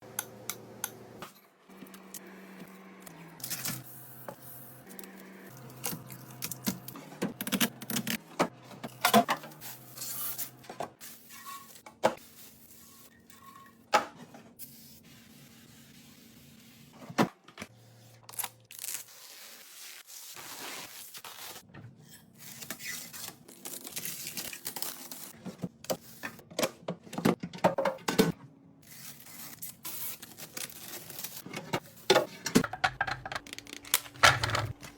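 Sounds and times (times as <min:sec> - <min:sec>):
plastic packaging crinkling: 0:28.9 - 0:31.4, 0:33.3 - 0:34.9.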